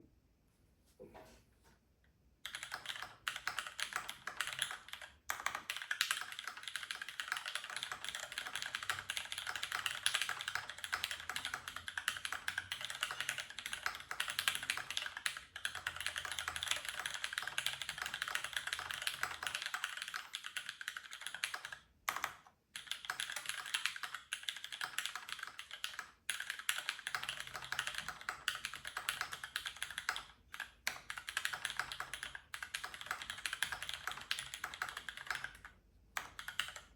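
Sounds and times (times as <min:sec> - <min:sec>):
fast typing on mechanical keyboard: 0:02.4 - 0:36.9.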